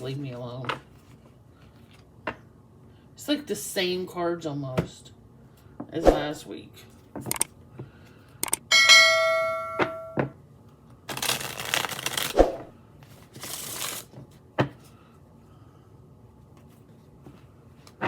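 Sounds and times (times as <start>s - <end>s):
small metal bell ringing: 8.7s - 10.2s
cards being shuffled: 11.1s - 14.3s.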